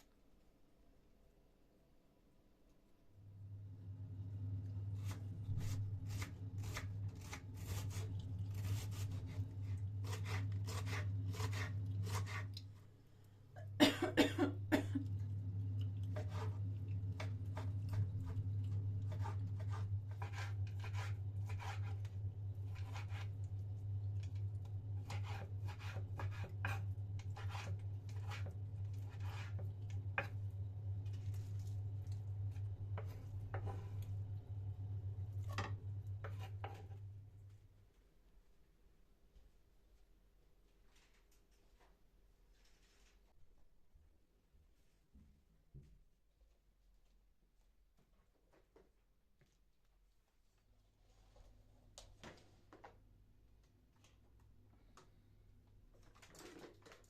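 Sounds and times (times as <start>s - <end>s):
steady low hum: 3.1s - 39.2s.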